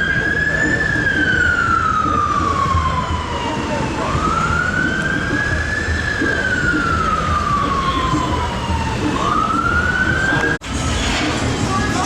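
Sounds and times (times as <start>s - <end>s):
ambulance siren wailing: 0.0s - 12.0s
low rumble of traffic: 0.0s - 12.0s.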